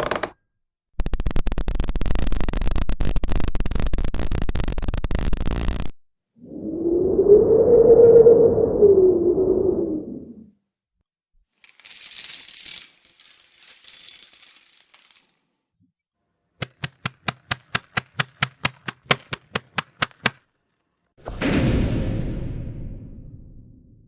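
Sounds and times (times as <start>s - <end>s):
fast sharp clicks: 1.0s - 5.9s, 16.6s - 20.5s.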